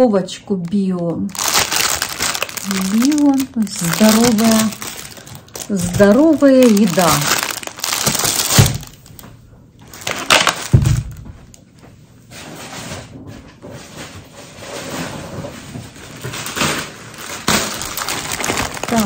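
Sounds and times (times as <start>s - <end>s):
packaging rustling: 0.6s - 11.3s, 14.6s - 19.0s
groceries knocking and thudding: 0.6s - 11.6s, 13.0s - 19.0s.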